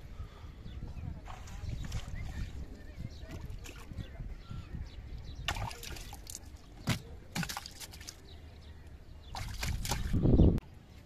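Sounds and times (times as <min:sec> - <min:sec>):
water sloshing and splashing: 0:01.2 - 0:04.4, 0:05.0 - 0:10.3.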